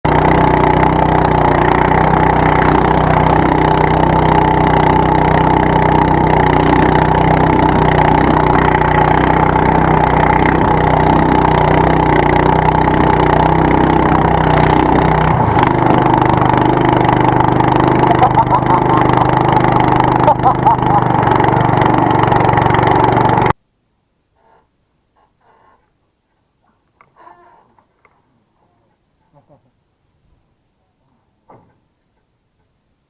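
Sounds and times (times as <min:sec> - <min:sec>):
small boat engine running: 0:00.0 - 0:23.6.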